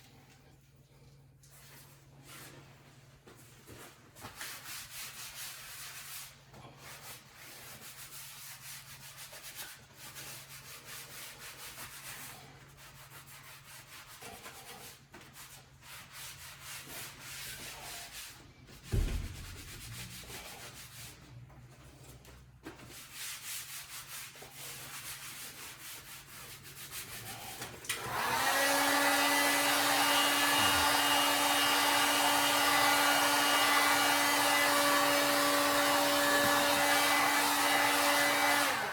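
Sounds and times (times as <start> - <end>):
hand sanding strokes: 1.4 - 38.9
thump: 18.8 - 20.0
hot-air blower running: 27.8 - 38.9.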